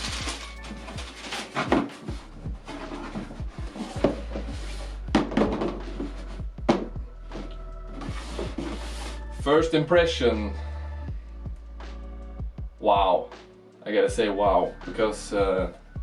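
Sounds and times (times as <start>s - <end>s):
cardboard box rustling and scraping: 0.0s - 9.4s.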